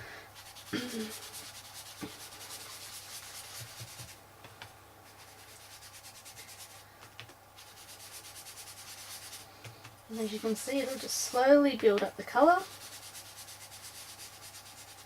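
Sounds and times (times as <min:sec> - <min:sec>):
ink tool scuffing on paper: 0:00.4 - 0:06.8.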